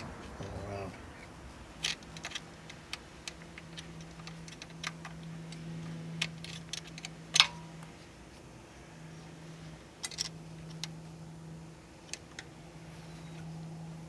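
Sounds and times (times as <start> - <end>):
hand tools clicking on metal: 0.0 - 7.9
steady low hum: 0.0 - 14.0.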